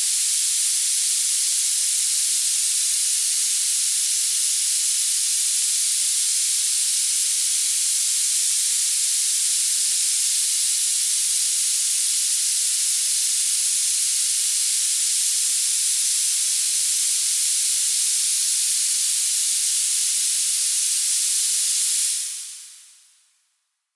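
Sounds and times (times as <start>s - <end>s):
high-pitched hiss: 0.0s - 23.3s.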